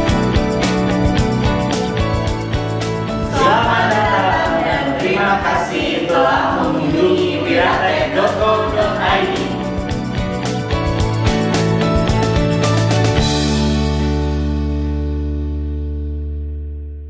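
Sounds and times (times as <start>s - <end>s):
sustained chords: 3.1s - 10.4s
choir singing wordless line: 3.2s - 10.0s.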